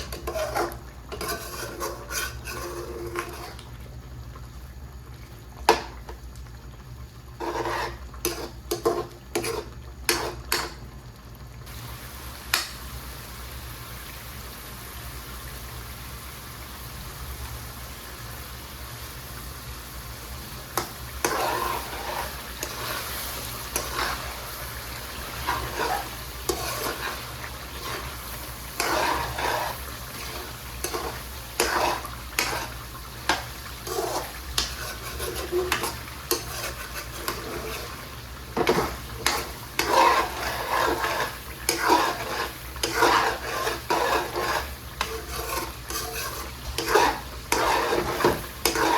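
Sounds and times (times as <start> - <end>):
spoon stirring and scraping: 0.0 - 3.7, 7.4 - 10.8, 20.7 - 48.9
meat sizzling in a pan: 0.0 - 48.9.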